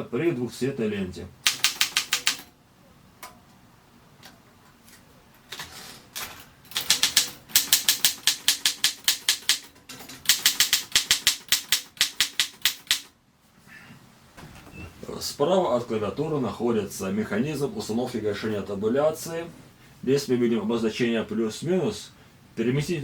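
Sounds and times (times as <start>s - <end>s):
typewriter keystrokes clacking: 1.4s - 2.5s, 6.3s - 13.1s.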